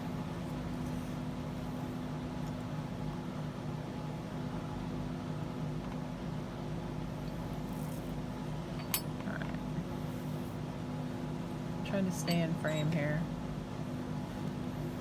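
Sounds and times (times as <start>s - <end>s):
fan humming: 0.0s - 15.0s.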